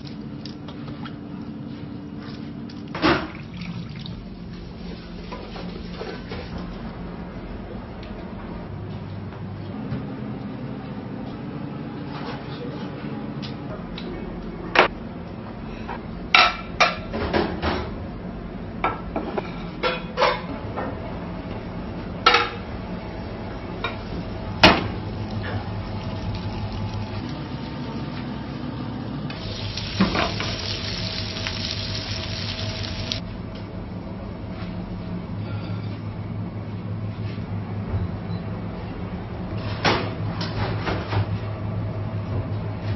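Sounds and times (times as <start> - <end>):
food sizzling in hot oil: 29.3 - 33.2.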